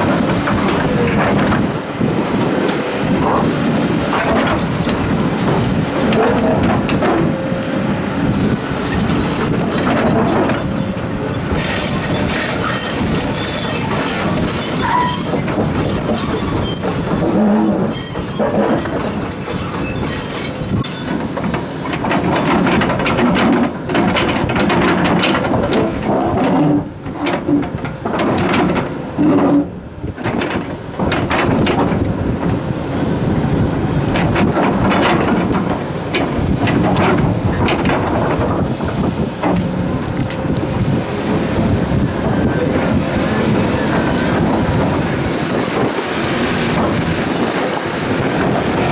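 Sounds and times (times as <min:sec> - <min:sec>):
excavator engines under load: 0:00.0 - 0:48.9
high metallic squeals: 0:08.2 - 0:21.2.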